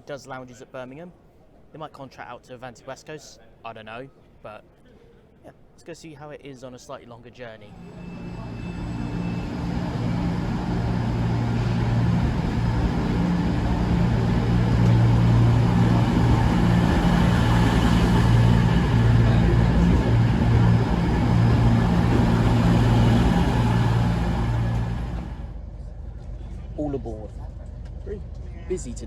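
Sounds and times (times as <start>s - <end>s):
diesel train engines droning: 7.6s - 29.0s.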